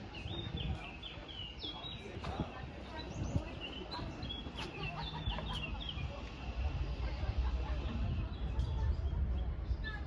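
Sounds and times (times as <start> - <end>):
birds chirping: 0.0 - 6.4.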